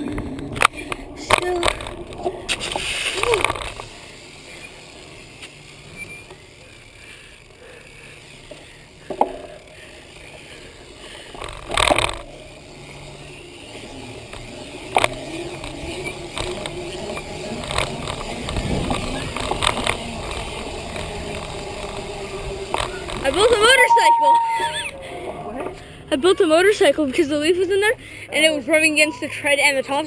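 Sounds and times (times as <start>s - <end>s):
bicycle rattles: 0.0s - 23.8s
bicycle tyres rolling: 0.0s - 23.9s.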